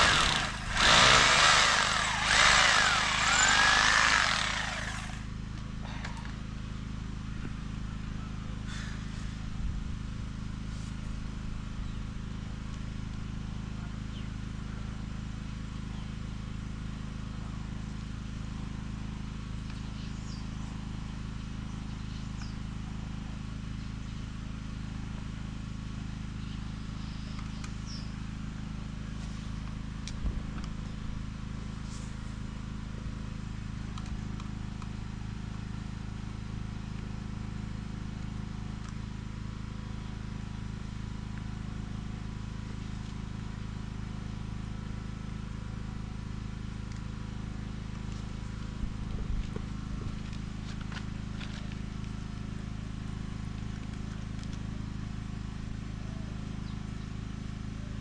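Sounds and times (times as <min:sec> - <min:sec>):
power drill boring: 0:00.0 - 0:05.2
steady low hum: 0:00.0 - 0:13.6.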